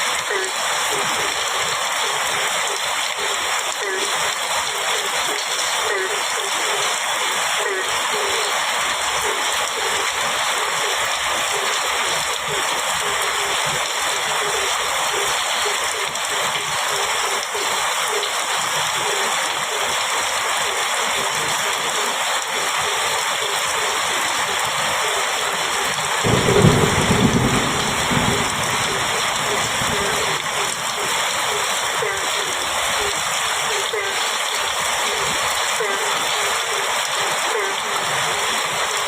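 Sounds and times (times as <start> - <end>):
heavy rain on a metal roof: 0.0 - 39.0
low thunder rumble: 26.2 - 30.6.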